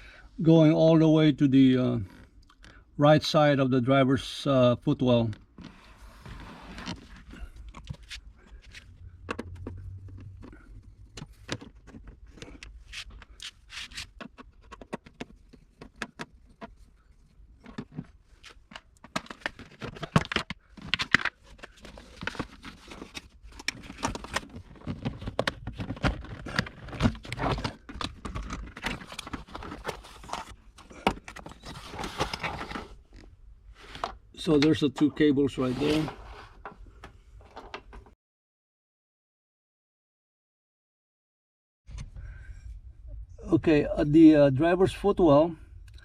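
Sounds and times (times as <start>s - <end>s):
hands handling cables and carpet: 4.9s - 38.2s.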